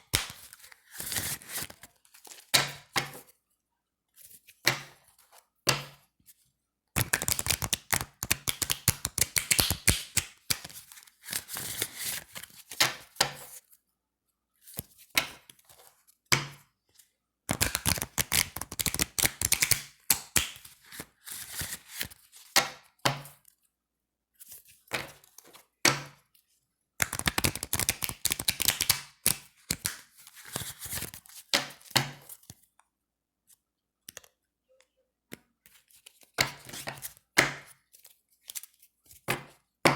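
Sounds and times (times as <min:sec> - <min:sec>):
playing cards shuffling: 0:00.1 - 0:02.4, 0:07.0 - 0:12.8, 0:17.5 - 0:22.2, 0:27.0 - 0:32.6.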